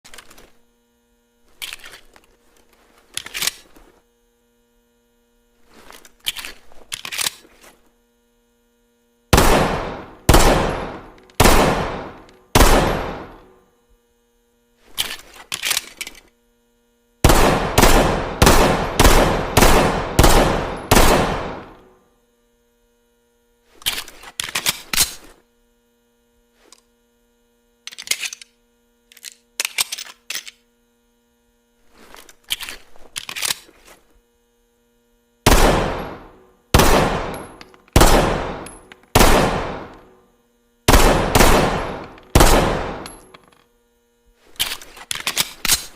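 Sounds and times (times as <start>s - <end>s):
pistol shots with echo: 9.4s - 13.4s, 17.2s - 21.8s, 35.5s - 40.0s, 40.9s - 43.2s.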